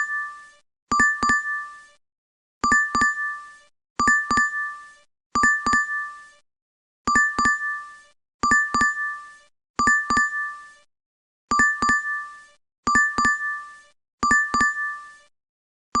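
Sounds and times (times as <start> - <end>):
app notification double ding: 4.0 - 4.6, 7.1 - 7.8, 11.5 - 12.3, 12.9 - 13.6, 14.2 - 15.0.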